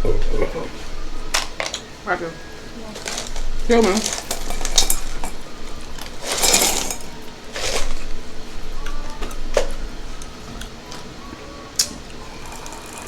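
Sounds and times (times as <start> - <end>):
drink cup and dishes clattering: 0.0 - 1.9, 2.6 - 11.1.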